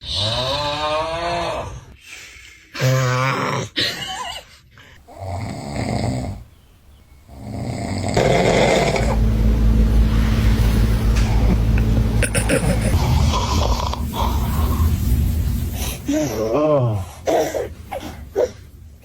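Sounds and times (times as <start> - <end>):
man snoring loudly: 0.0 - 1.8, 5.1 - 6.4, 7.3 - 9.2.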